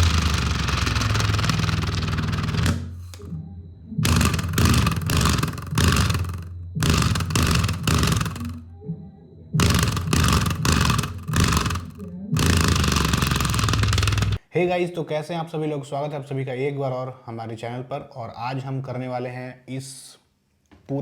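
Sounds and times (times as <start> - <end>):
bass-heavy electronic music: 0.0 - 14.4.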